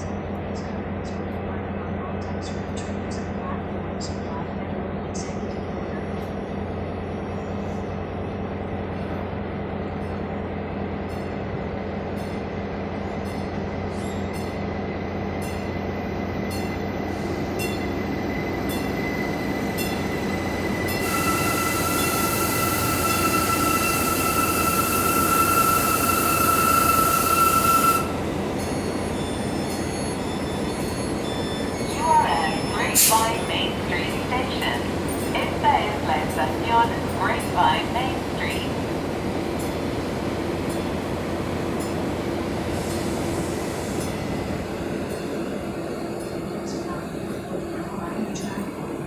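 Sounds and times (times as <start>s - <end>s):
train rumbling by: 0.0s - 49.0s
high wheel squeal: 18.0s - 33.2s.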